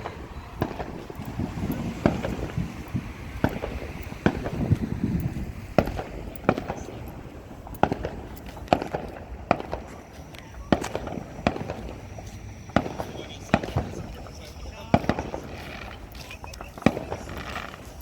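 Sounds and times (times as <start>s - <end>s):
fireworks bangs and cracks: 0.0s - 18.0s.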